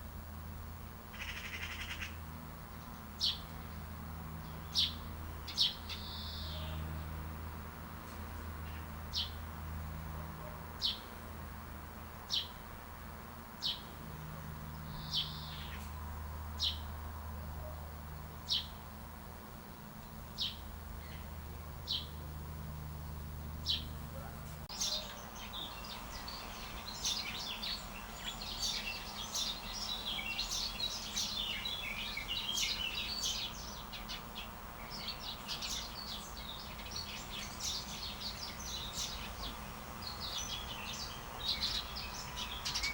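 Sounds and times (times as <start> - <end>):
low steady hum: 0.0 - 42.8
many birds chirping: 1.1 - 7.2, 13.6 - 16.0, 19.9 - 42.9
bird chirping: 2.8 - 3.8, 4.4 - 7.1, 12.3 - 12.6, 13.6 - 15.9, 16.6 - 16.9, 18.4 - 18.8, 20.0 - 22.3, 22.9 - 42.9.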